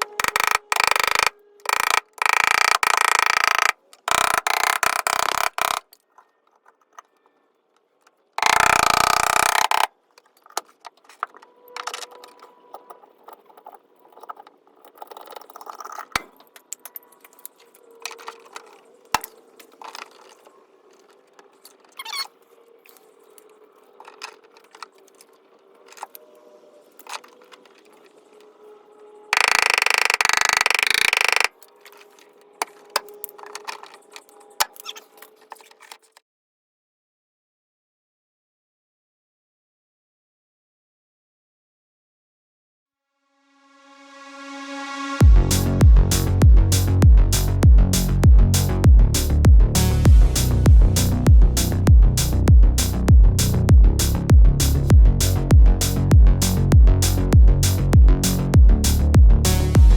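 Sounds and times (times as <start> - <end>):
tool clicks and taps: 0.0 - 6.0, 8.4 - 12.4, 18.1 - 20.3, 29.4 - 31.5.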